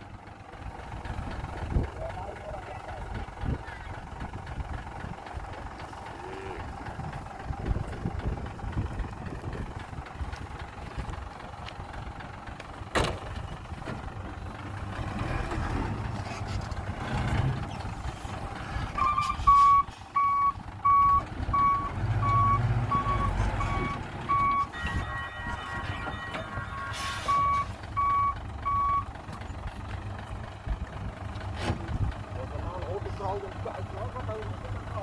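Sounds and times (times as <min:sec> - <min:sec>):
dump truck engine rumbling: 0:00.0 - 0:35.0
reversing alarm beeping: 0:19.0 - 0:29.1.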